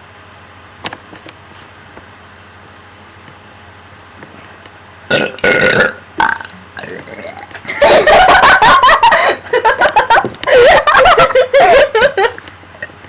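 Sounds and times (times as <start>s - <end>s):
person burping: 5.1s - 7.6s.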